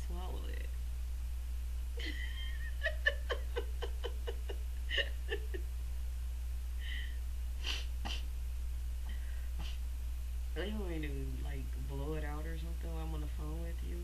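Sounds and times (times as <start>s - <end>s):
woman laughing: 2.0s - 5.6s, 6.8s - 8.2s
sniffs: 6.9s - 8.3s, 9.1s - 9.8s.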